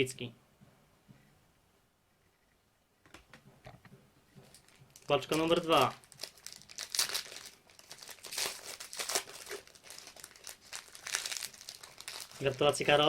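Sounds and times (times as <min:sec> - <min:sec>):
wrapper crinkling and tearing: 0:04.5 - 0:13.0.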